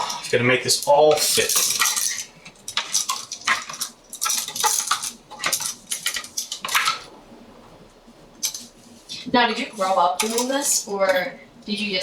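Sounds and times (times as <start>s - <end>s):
clicks and scrapes of wiring: 0.0s - 7.1s.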